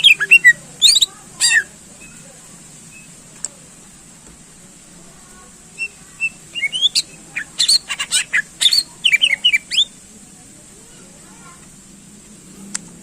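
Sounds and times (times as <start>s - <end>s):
bird singing whistled notes: 0.0s - 2.2s, 5.8s - 10.0s.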